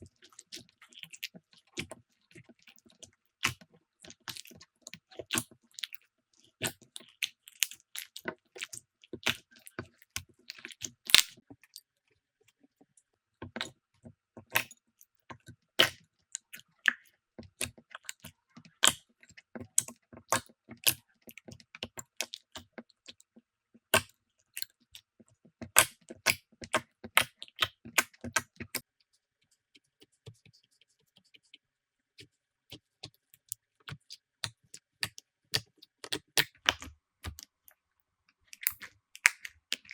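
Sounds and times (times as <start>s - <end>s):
slime clicking and popping: 33.9s - 37.4s, 38.5s - 39.9s.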